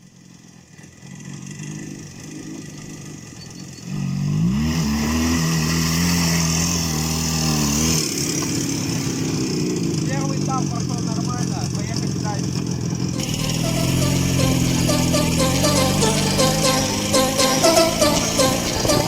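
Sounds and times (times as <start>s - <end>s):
motorcycle engine revving: 0.1s - 19.0s.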